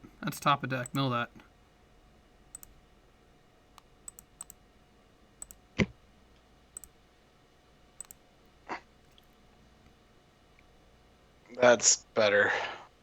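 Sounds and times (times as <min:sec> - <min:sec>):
light clicks: 0:02.5 - 0:02.8, 0:03.8 - 0:04.6, 0:05.4 - 0:05.6, 0:08.0 - 0:08.2.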